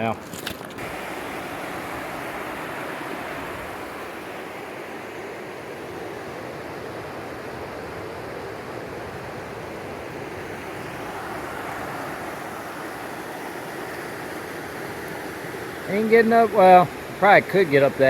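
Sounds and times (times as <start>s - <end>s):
river water rushing: 0.0s - 18.0s.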